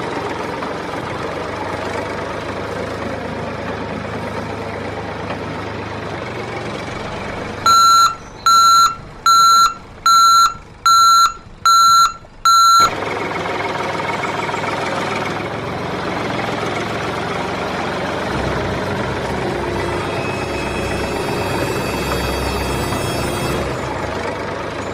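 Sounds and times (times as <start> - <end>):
engine running steadily: 0.0 - 24.9
vehicle reversing alarm beeps: 7.6 - 13.0, 19.8 - 23.9.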